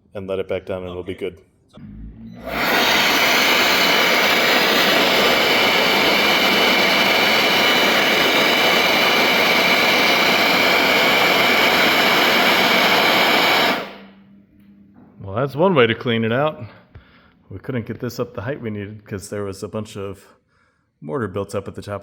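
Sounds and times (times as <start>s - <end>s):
power tool grinding mortar: 2.5s - 14.0s.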